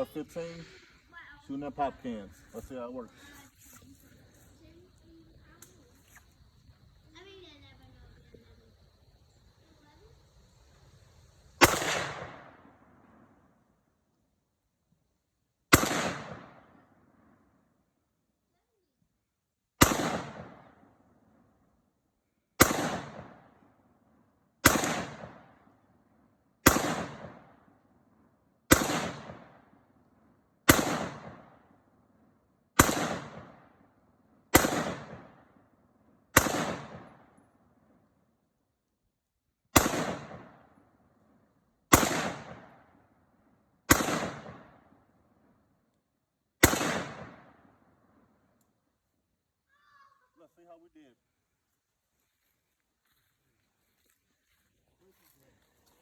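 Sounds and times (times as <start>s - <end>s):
rifle single shots: 11.6s - 13.4s, 15.7s - 17.3s, 19.8s - 21.0s, 22.6s - 23.6s, 24.6s - 25.8s, 26.6s - 27.7s, 28.7s - 29.8s, 30.6s - 31.8s, 32.7s - 35.7s, 36.3s - 37.6s, 39.7s - 40.9s, 41.9s - 43.0s, 43.8s - 45.2s, 46.6s - 48.0s.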